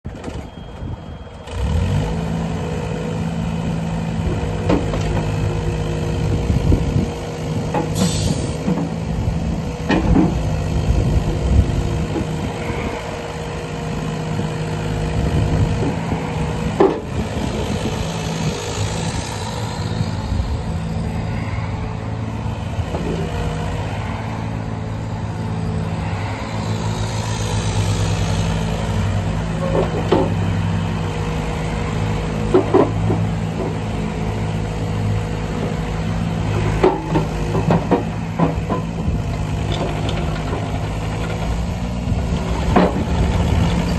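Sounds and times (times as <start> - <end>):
diesel engine running: 0.1 - 43.9
knocks and clunks: 9.8 - 10.5, 29.6 - 30.6, 32.4 - 33.8, 36.6 - 41.6, 42.3 - 43.9.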